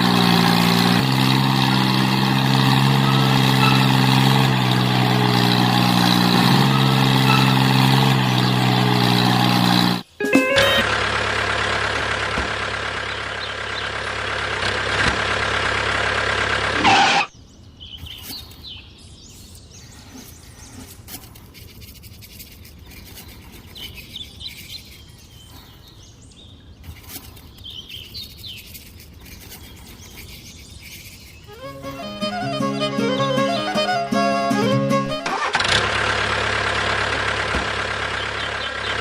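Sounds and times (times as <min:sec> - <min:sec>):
loud steady engine noise: 0:00.0 - 0:17.3, 0:31.4 - 0:39.0.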